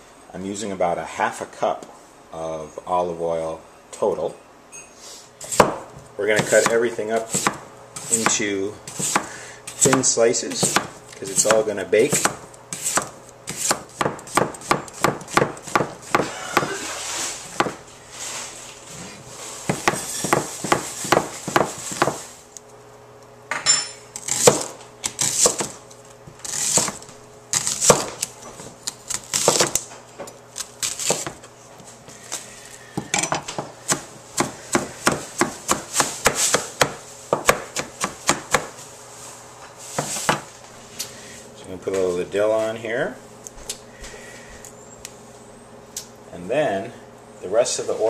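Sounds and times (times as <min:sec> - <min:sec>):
knife chopping on cutting board: 0:05.4 - 0:16.8, 0:17.5 - 0:17.8, 0:19.6 - 0:22.2, 0:24.3 - 0:25.8, 0:26.4 - 0:27.0, 0:27.6 - 0:28.3, 0:29.1 - 0:29.8, 0:30.8 - 0:31.4, 0:33.0 - 0:38.8, 0:39.9 - 0:40.5.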